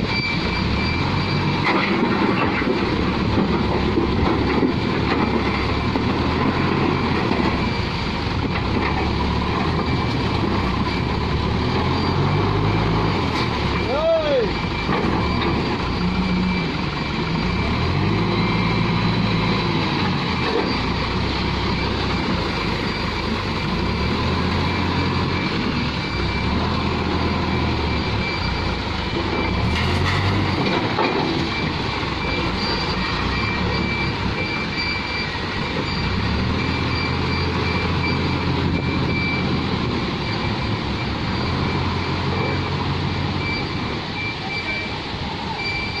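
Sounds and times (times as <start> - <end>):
diesel engine running: 0.0 - 46.0.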